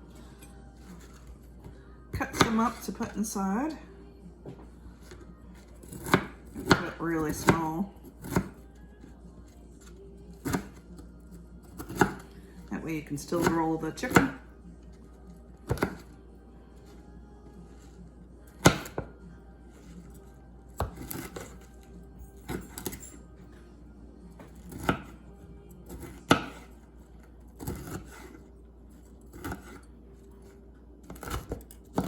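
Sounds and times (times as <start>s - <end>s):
knife chopping on cutting board: 5.8s - 7.6s, 8.2s - 8.6s, 11.7s - 12.2s, 13.4s - 14.4s, 15.6s - 16.1s, 18.6s - 19.1s, 20.8s - 21.7s, 24.5s - 25.2s, 25.9s - 26.8s, 27.6s - 28.4s, 29.3s - 29.9s, 31.0s - 32.0s.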